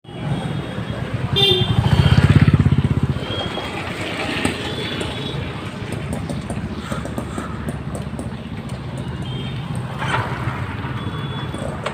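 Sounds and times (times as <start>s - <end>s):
street traffic noise: 0.0s - 11.9s
vehicle engine passing: 1.8s - 4.7s.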